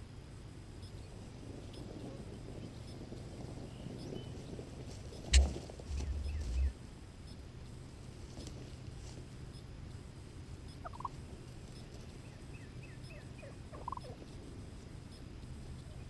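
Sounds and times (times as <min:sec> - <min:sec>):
turkey gobbling: 0:05.3 - 0:06.7, 0:10.8 - 0:11.1, 0:13.0 - 0:14.2.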